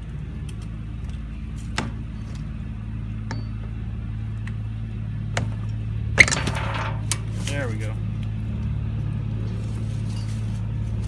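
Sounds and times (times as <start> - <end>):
steady low hum: 0.0 - 11.0
pry bar clanking on metal: 3.2 - 3.8, 5.4 - 8.0
light ringing clink: 3.3 - 3.7.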